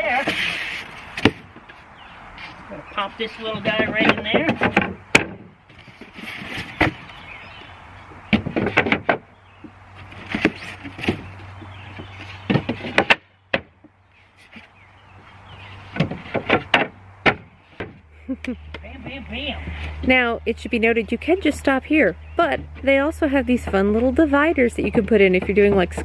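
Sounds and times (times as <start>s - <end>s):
planter parts knocking: 3.3s - 7.2s, 21.0s - 26.0s
pieces scraping into place: 5.7s - 7.2s.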